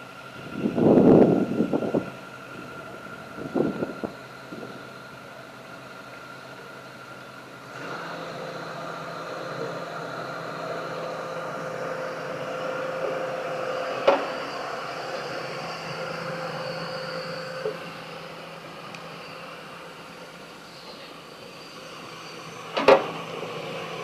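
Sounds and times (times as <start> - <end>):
small electric motors whining: 7.6 - 24.0.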